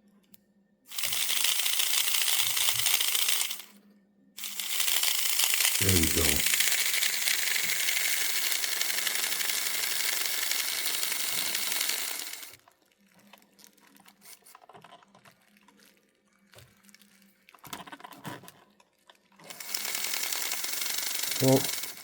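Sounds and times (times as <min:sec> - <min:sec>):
model train motor buzzing: 0:00.9 - 0:03.7, 0:04.4 - 0:12.6, 0:19.5 - 0:22.0.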